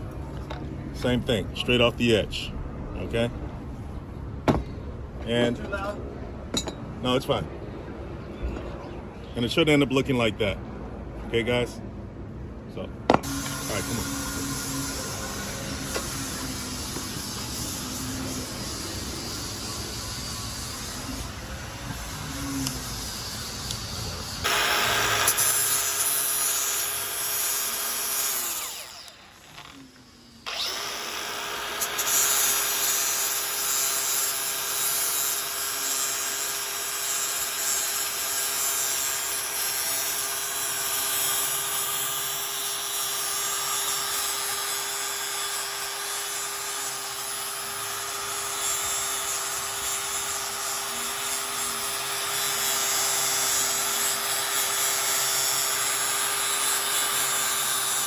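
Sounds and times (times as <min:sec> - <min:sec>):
angle grinder grinding steel: 0:13.2 - 0:58.0.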